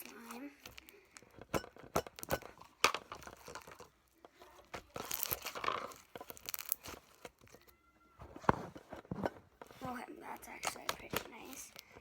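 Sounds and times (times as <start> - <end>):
slime squished with crackly pops: 0.0 - 7.9, 10.3 - 12.0.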